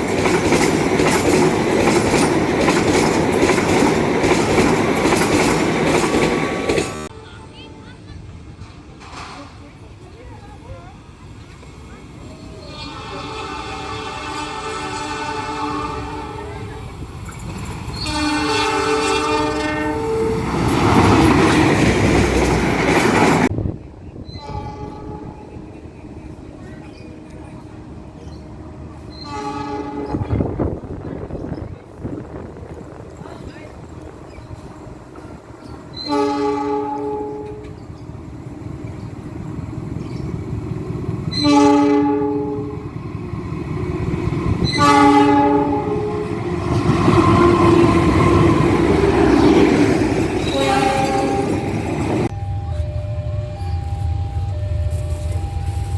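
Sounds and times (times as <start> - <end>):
train passing close by: 0.0 - 55.9
locomotive horn chord: 12.6 - 16.6, 18.0 - 20.6, 29.2 - 30.4, 36.0 - 37.8, 41.3 - 42.9, 44.7 - 49.6, 50.4 - 55.9.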